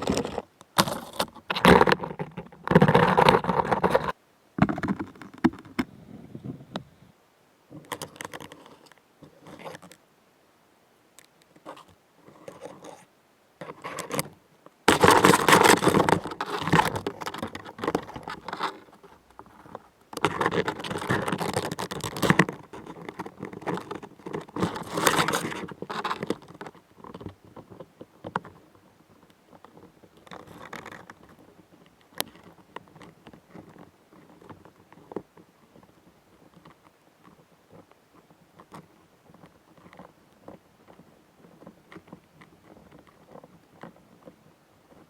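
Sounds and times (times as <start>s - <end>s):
insect scraping and crunching prey: 7.8s - 10.0s, 11.2s - 44.3s.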